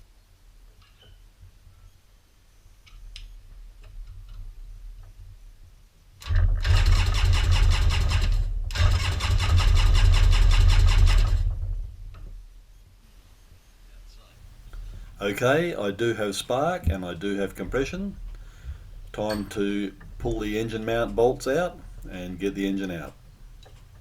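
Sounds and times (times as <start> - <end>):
jet ski engine cranking: 14.4 - 24.0.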